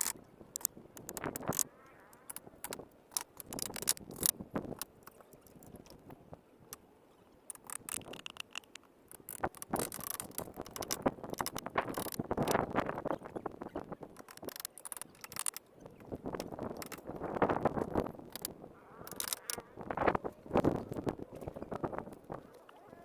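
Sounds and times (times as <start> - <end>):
clicks knocks and scrapes of hand work: 7.5 - 12.6, 14.2 - 17.1.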